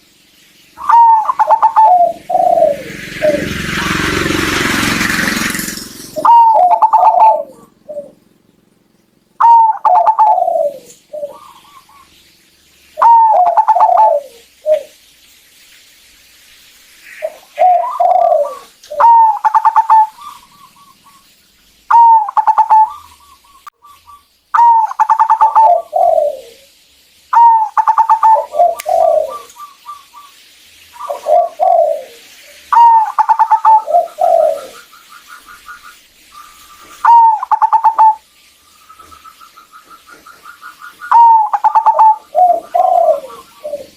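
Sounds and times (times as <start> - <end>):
dove cooing: 0.8 - 8.4, 9.4 - 12.2, 13.0 - 15.0, 17.2 - 21.3, 21.9 - 26.7, 27.3 - 30.3, 31.0 - 35.9, 36.5 - 38.2, 39.0 - 43.9.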